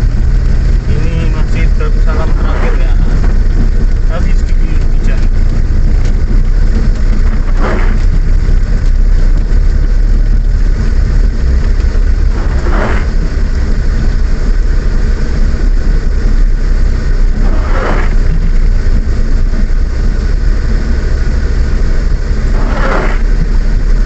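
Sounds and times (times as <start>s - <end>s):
engine and road rumble: 0.0s - 24.0s
short swish: 7.3s - 8.2s, 12.3s - 13.4s, 17.4s - 18.7s, 22.5s - 23.6s.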